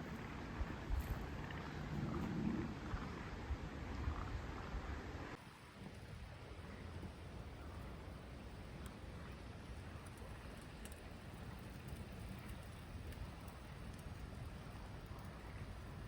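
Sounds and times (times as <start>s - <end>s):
faint ticks: 9.6s - 16.0s.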